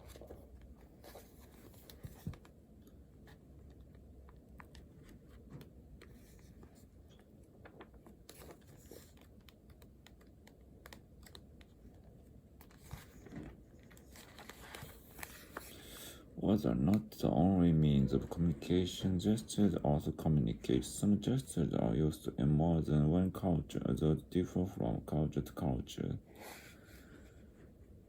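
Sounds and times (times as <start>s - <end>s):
faint clicks and taps: 0.1s - 15.3s.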